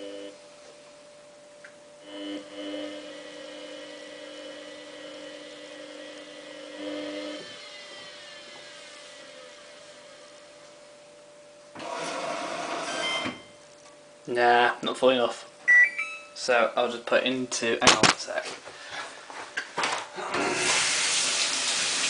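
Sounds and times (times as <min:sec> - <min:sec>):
washing machine motor whine: 0:00.0 - 0:13.7, 0:19.8 - 0:22.0.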